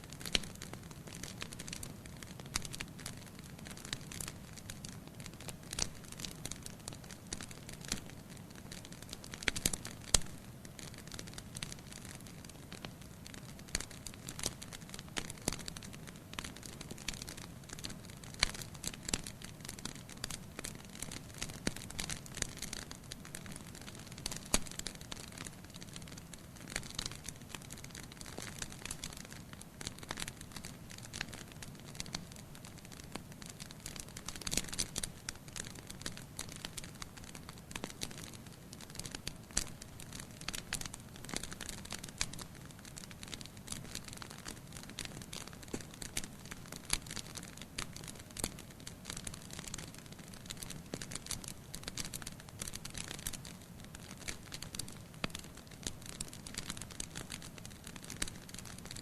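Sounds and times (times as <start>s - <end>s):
logs crackling and popping: 0.1s - 59.0s.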